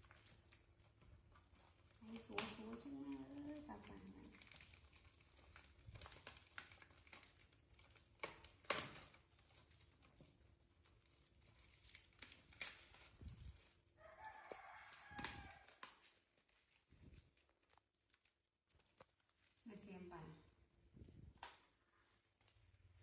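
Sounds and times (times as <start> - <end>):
rustling: 0.0 - 23.0.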